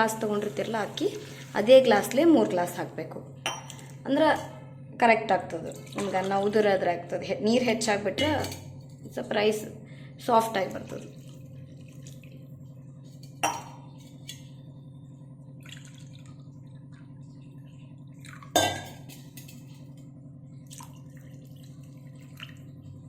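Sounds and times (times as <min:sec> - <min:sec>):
steady low hum: 0:00.0 - 0:23.0
water pouring into a pot: 0:00.3 - 0:01.9.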